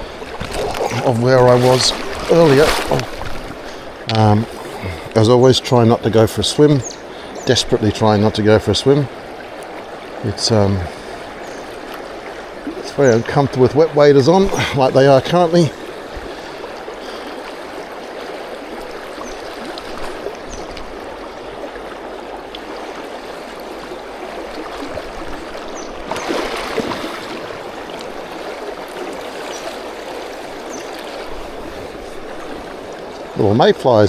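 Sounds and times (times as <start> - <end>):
river flowing over stones: 0.0 - 34.0.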